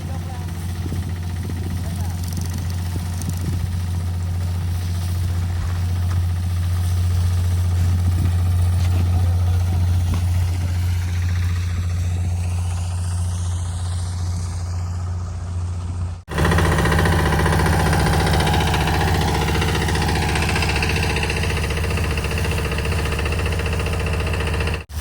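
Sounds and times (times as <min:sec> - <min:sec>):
diesel engine idling: 0:00.0 - 0:25.0.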